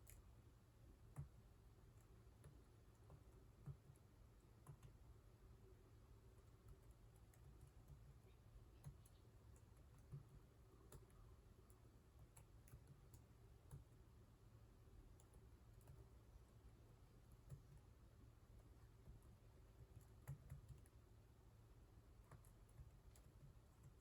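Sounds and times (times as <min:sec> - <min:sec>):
low steady hum: 0:00.0 - 0:24.0
faint keyboard keystrokes: 0:06.4 - 0:14.0, 0:17.2 - 0:17.9, 0:18.8 - 0:21.0.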